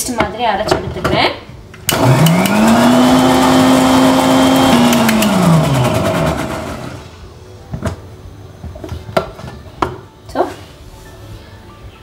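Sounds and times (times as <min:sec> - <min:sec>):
electric mixer grinder motor: 0:01.9 - 0:07.1.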